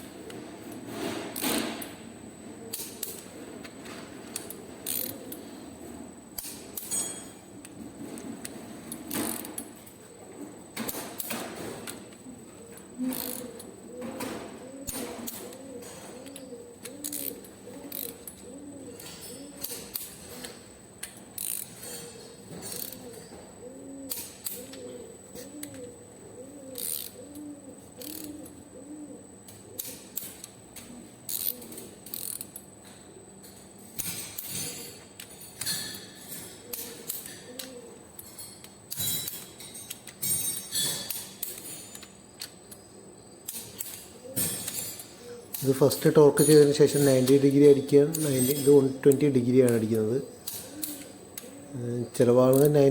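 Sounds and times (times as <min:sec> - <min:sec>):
ratchet wrench clicking: 0:04.8 - 0:05.1, 0:17.0 - 0:18.2, 0:21.4 - 0:21.7, 0:22.7 - 0:23.0, 0:28.0 - 0:28.3, 0:31.3 - 0:32.5.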